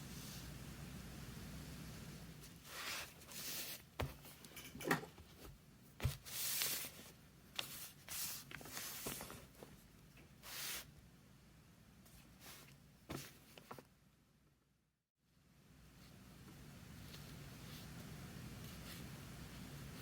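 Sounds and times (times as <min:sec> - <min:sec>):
brush swishing across paper: 0:02.4 - 0:04.0, 0:06.0 - 0:09.6, 0:10.4 - 0:10.9, 0:12.1 - 0:13.4, 0:17.0 - 0:20.0.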